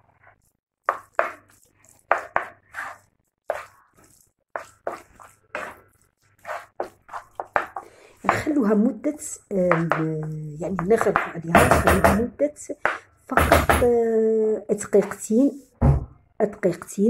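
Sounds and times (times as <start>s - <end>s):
spoon scraping frying pan: 0.9s - 8.6s.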